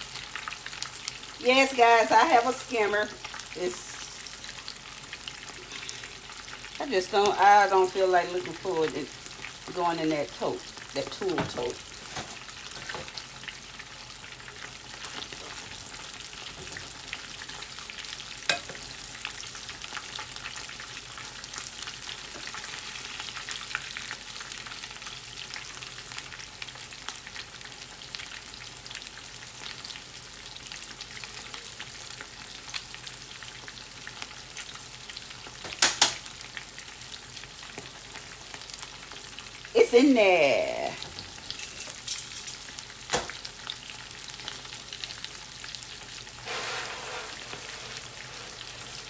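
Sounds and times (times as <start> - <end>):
chicken deep-frying in oil: 0.0 - 49.0.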